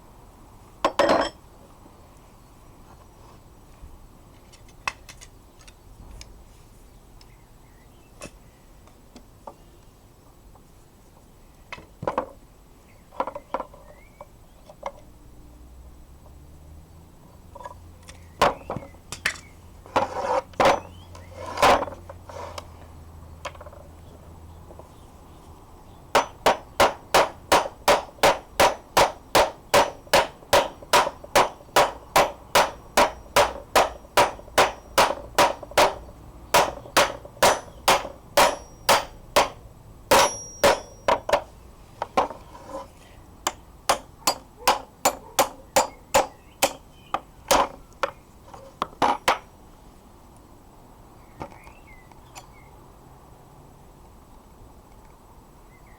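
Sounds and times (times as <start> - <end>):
hammer striking metal: 26.2 - 41.4, 43.5 - 46.8
scattered knocks: 26.2 - 41.5.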